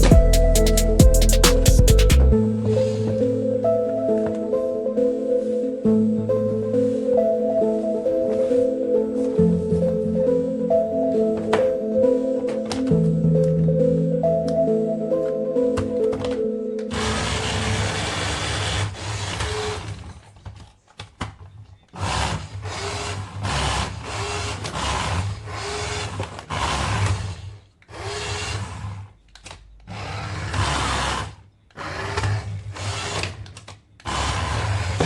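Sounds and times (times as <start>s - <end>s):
toy electric motor whirring: 16.9s - 20.2s, 21.9s - 35.0s.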